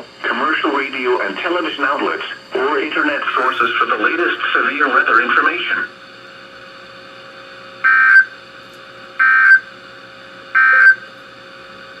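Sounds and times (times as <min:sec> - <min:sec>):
faint hum and hiss: 0:00.0 - 0:12.0
digital data burst screeches: 0:03.3 - 0:03.8, 0:10.6 - 0:11.0.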